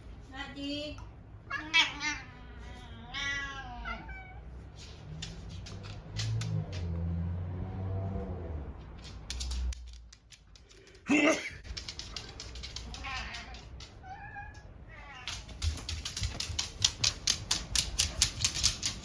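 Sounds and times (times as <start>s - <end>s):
cat meowing: 1.5s - 4.5s, 12.8s - 15.6s.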